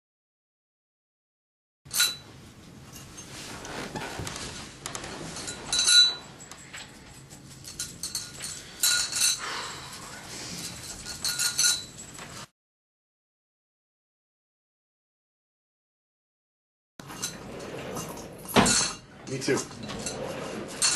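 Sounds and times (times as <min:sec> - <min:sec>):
tableware clinking: 0:01.9 - 0:02.3, 0:05.1 - 0:09.5, 0:10.6 - 0:12.5, 0:17.0 - 0:20.9.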